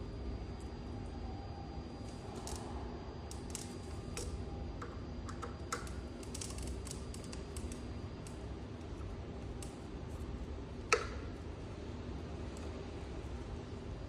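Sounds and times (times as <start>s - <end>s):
steady low hum: 0.0s - 14.0s
tools and small parts clicking: 5.3s - 8.4s.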